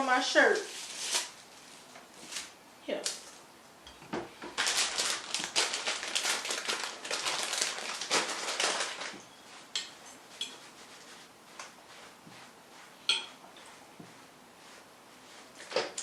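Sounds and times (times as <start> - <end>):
paper napkin rubbing on shirt: 10.6 - 13.0, 13.6 - 16.0.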